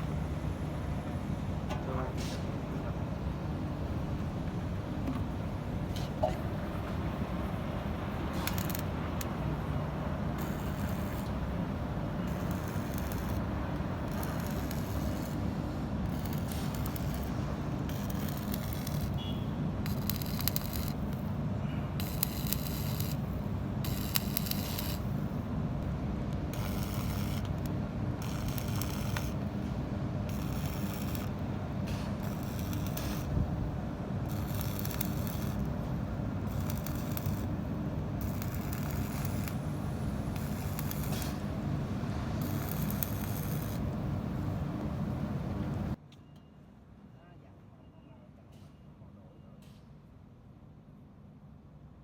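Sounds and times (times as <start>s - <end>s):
steady low rumble: 6.5s - 46.0s
welding arc hissing crackle: 8.2s - 25.4s, 26.4s - 44.5s.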